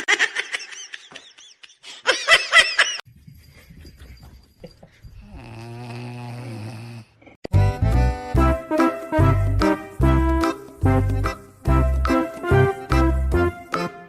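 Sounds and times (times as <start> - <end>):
pet snoring: 5.2 - 7.4.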